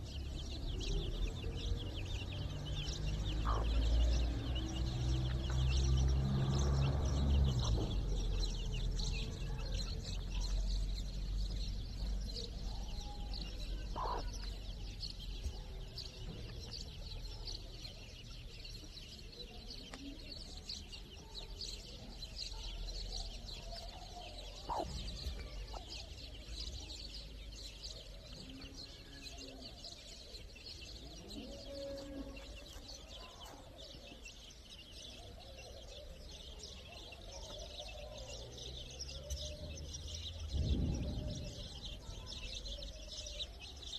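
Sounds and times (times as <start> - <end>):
chicks peeping: 0.0 - 43.9
adult chickens clucking: 3.4 - 3.9, 13.8 - 14.6, 24.6 - 26.0
low rumble: 40.3 - 42.5.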